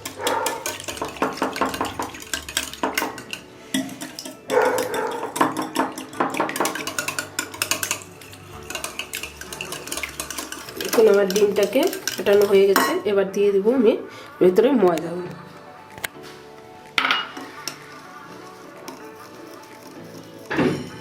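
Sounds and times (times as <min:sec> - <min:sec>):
utensil clicking against bowl: 0:00.0 - 0:12.8.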